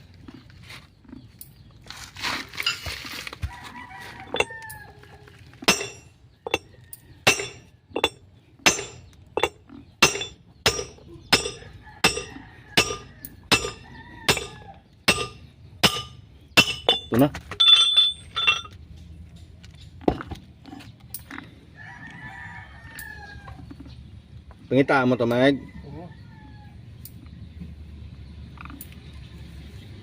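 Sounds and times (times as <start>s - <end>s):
rooster crowing: 3.4s - 5.3s, 11.6s - 14.8s, 21.7s - 23.6s, 25.3s - 26.8s.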